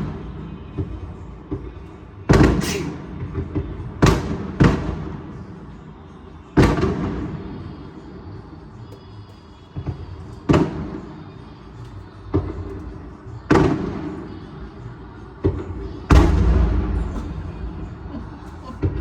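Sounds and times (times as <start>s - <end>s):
fireworks bangs echoing: 16.1s - 19.0s.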